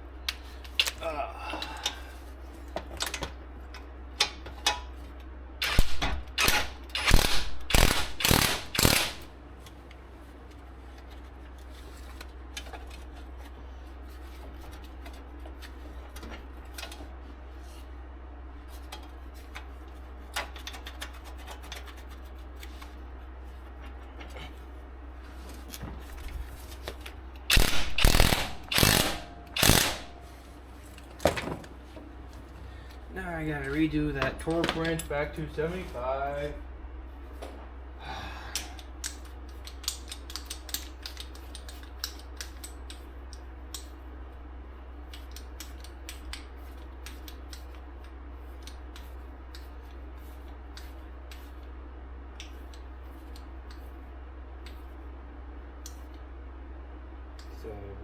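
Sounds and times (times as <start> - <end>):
ratchet wrench ratcheting: 5.6 - 9.3, 27.5 - 30.2.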